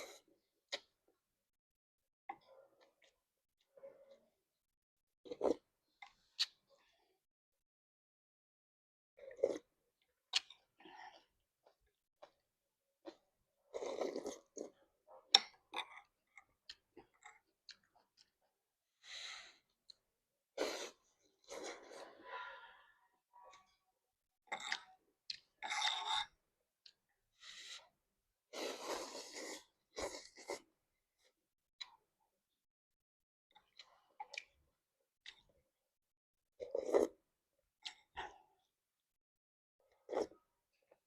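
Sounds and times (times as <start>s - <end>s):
slurping and chewing noodles: 9.2s - 12.4s, 13.1s - 20.0s, 20.6s - 22.5s, 24.5s - 32.0s, 36.6s - 38.7s, 39.9s - 41.0s.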